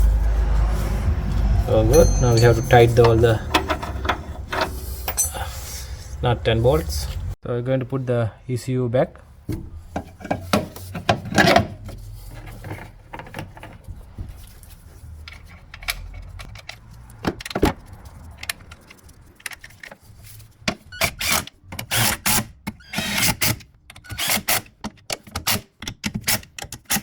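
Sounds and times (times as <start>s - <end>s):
hand tools clinking on metal: 1.9s - 5.9s.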